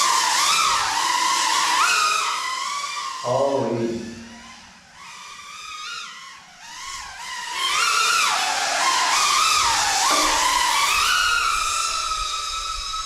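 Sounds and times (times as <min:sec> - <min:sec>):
drone motors whining: 0:00.0 - 0:13.0.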